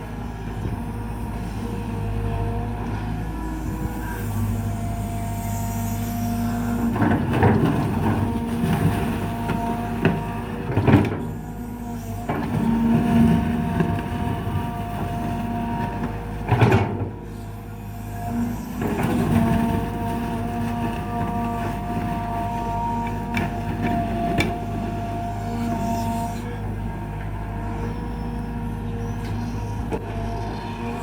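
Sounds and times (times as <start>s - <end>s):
excavator diesel engine running: 0.0s - 31.0s.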